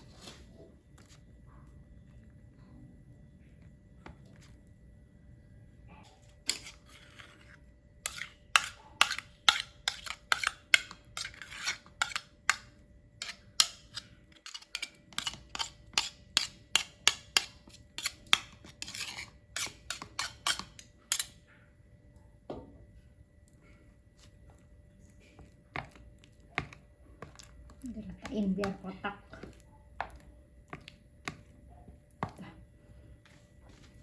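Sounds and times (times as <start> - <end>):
utensil scraping and tapping a pan: 6.4 - 21.3.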